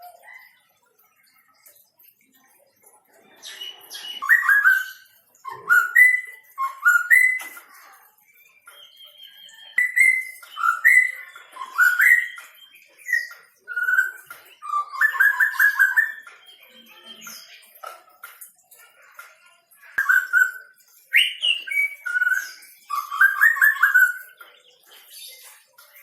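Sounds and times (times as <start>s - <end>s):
bird singing whistled phrases: 3.6s - 7.7s, 8.6s - 17.7s, 19.9s - 24.4s.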